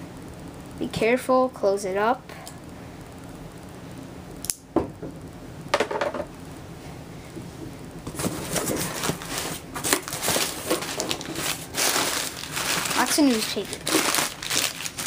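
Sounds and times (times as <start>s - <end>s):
newspaper rustling and crinkling: 8.1s - 15.0s.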